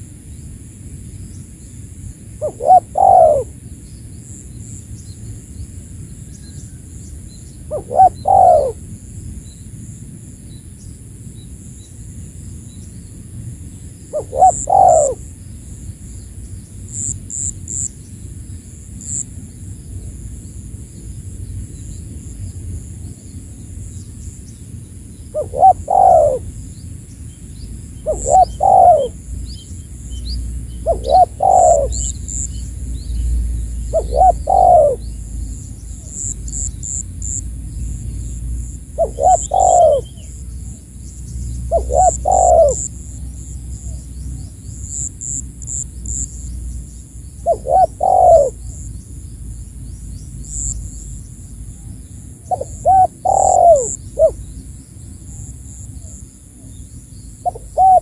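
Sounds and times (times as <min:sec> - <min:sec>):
dove cooing: 0:02.4 - 0:03.5, 0:07.7 - 0:08.8, 0:14.1 - 0:15.3, 0:25.3 - 0:26.5, 0:28.0 - 0:29.3, 0:30.8 - 0:32.5, 0:33.8 - 0:35.4, 0:38.9 - 0:40.4, 0:41.6 - 0:44.5, 0:47.4 - 0:48.8, 0:52.5 - 0:54.4, 0:57.4 - 0:58.0
small birds chirping: 0:02.4 - 0:08.8, 0:10.5 - 0:58.0.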